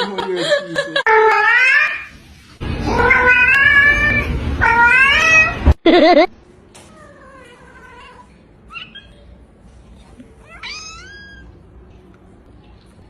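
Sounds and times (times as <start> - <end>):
cat meowing: 1.1 - 2.1, 2.8 - 5.6, 10.4 - 11.6.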